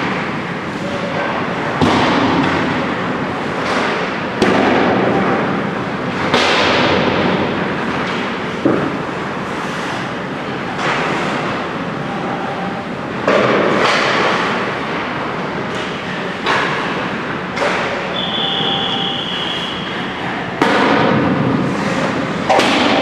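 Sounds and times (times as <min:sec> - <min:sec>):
pucks hitting boards: 0:01.1 - 0:11.8, 0:13.2 - 0:15.0, 0:15.7 - 0:23.0
hockey shots cracking: 0:06.2 - 0:10.2, 0:20.6 - 0:23.0
skates scraping on ice: 0:08.8 - 0:10.2, 0:21.5 - 0:22.6
high whistle-like tone: 0:18.1 - 0:20.3.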